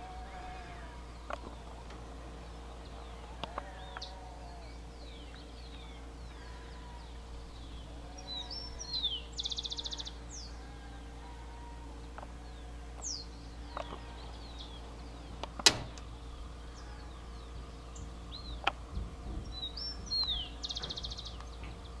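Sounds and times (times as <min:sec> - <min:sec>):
birds whistling calls: 0:00.0 - 0:22.0
steady low hum: 0:00.0 - 0:22.0.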